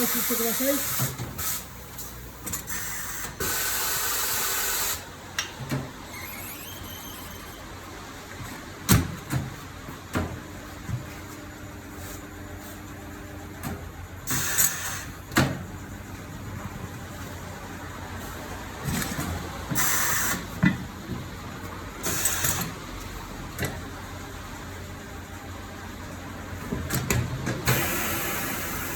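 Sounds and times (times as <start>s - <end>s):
compressed air hissing from tools: 0.0s - 5.0s, 14.3s - 15.2s, 19.8s - 20.4s, 27.7s - 28.9s.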